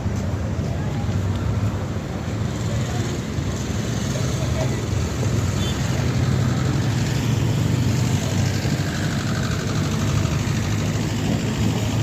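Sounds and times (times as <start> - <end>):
street traffic: 0.0 - 12.0
vehicle engine running: 0.0 - 12.0.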